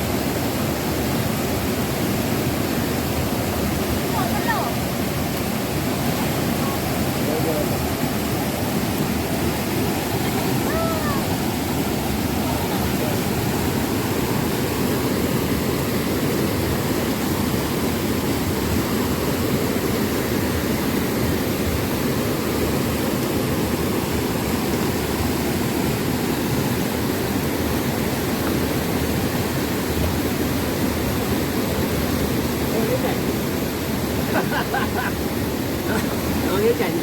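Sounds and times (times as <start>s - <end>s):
river rushing over rocks: 0.0s - 37.0s.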